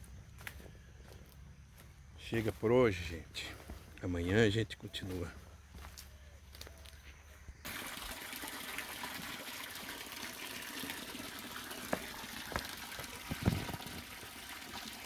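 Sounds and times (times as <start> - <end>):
running water rushing: 7.7 - 15.0.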